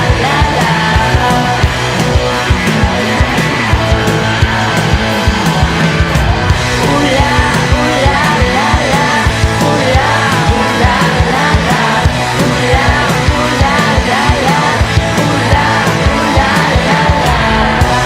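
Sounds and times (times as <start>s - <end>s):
woman singing lead vocal: 0.0s - 2.6s, 6.7s - 18.0s
rock band playing: 0.0s - 18.0s.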